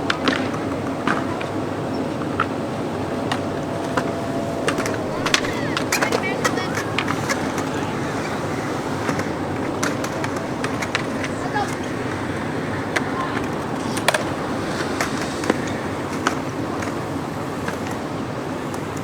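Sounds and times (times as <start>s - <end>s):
skateboards clacking and rolling: 0.0s - 19.0s
voices: 0.0s - 19.0s
faint siren winding down: 2.6s - 12.2s.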